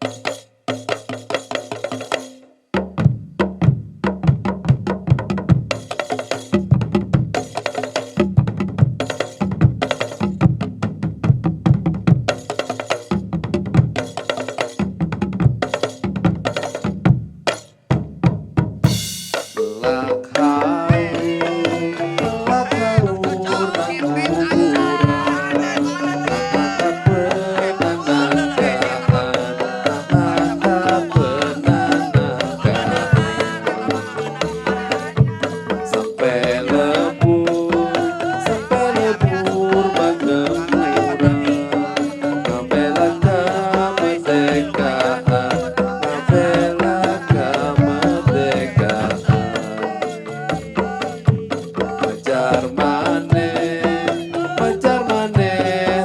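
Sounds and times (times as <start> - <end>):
drum strikes: 0.0 - 56.0
bamboo instrument melody: 18.9 - 56.0.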